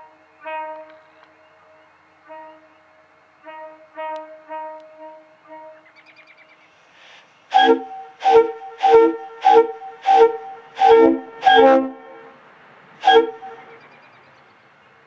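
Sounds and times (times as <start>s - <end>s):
air horn chord blasts: 0.0s - 1.1s, 3.4s - 5.8s, 7.5s - 12.4s, 13.0s - 13.8s
echo of horn blasts: 0.0s - 6.0s, 7.5s - 12.4s, 13.0s - 13.8s.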